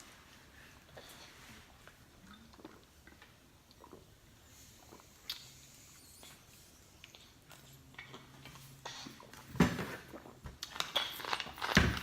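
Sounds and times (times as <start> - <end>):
mouth eating clicks and smacks: 5.0 - 5.6.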